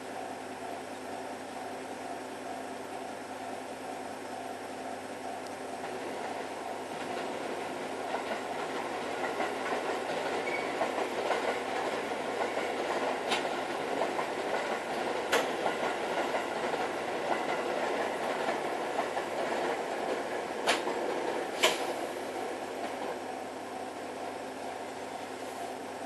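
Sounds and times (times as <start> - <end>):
train wheels clacking over rail joints: 5.9 - 23.2.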